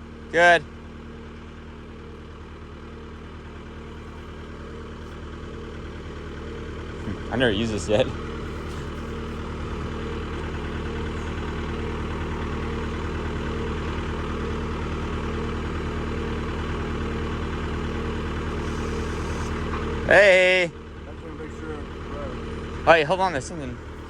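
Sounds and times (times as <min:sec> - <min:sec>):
tractor engine running: 0:00.0 - 0:24.0.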